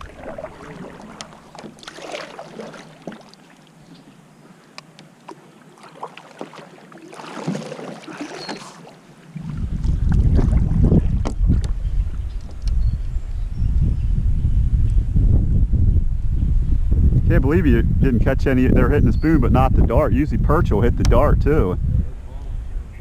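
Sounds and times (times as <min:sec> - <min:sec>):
water splashing and lapping: 0:00.0 - 0:12.7
wind buffeting the microphone: 0:09.4 - 0:23.0.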